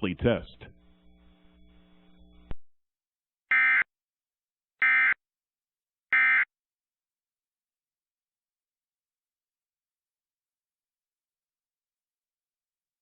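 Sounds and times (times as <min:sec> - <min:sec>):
faint hum: 0:00.0 - 0:02.6.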